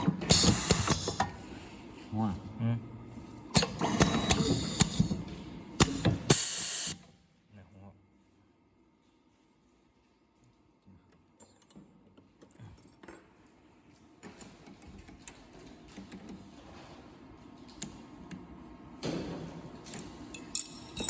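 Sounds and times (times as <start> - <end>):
small metallic clicks and clinks: 11.4 - 13.4, 19.8 - 21.0.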